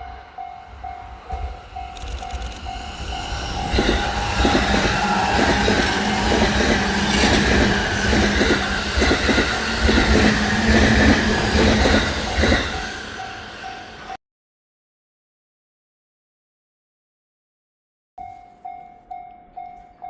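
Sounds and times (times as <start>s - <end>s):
crossing warning bell: 0.0s - 14.2s, 18.2s - 20.0s
train low hum: 0.0s - 14.2s
train wheels clattering over rails: 1.2s - 14.2s.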